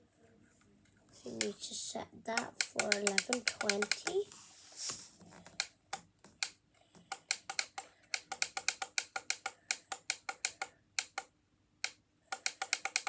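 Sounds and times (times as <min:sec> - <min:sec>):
alarm clock buttons clicking: 0:02.3 - 0:04.2, 0:05.6 - 0:13.0.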